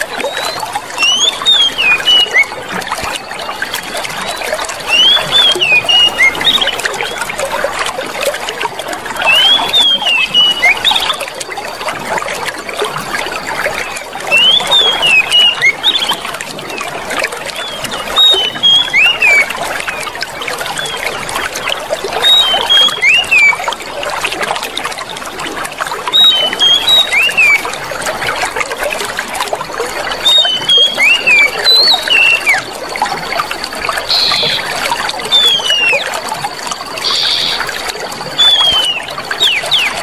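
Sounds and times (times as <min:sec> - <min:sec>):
water running and trickling: 0:00.0 - 0:40.0.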